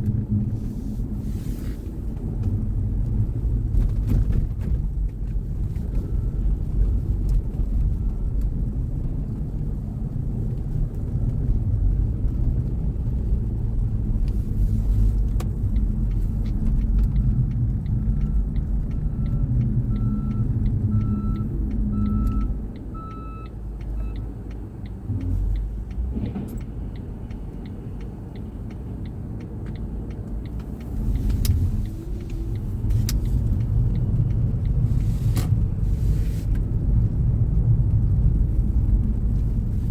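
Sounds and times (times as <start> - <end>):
car engine and tyre rumble: 0.0 - 39.9
repeated beeps: 19.0 - 24.3.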